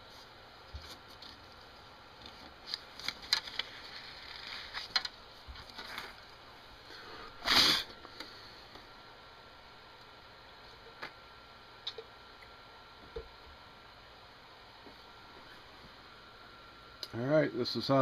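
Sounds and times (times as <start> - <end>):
short puff of breath: 7.4 - 7.9.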